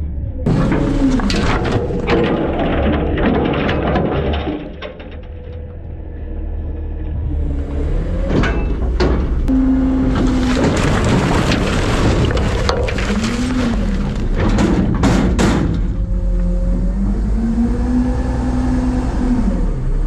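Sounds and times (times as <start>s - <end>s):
truck engine rumble: 0.0s - 20.0s
refuse crashing into hopper: 0.5s - 5.4s, 8.3s - 16.3s
hydraulic whine: 5.8s - 11.2s.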